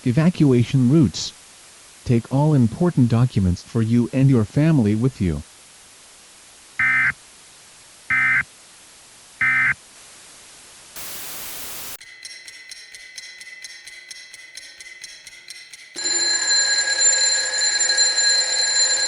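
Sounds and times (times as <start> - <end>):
static hiss: 0.0 - 12.0
fast even ticking: 11.0 - 16.0
steady high tone: 11.0 - 19.0.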